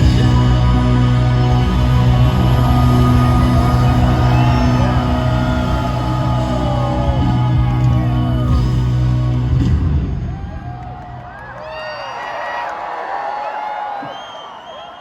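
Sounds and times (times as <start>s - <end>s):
rock band sustained chord: 0.0s - 10.6s
crowd whooping and cheering: 0.0s - 15.0s.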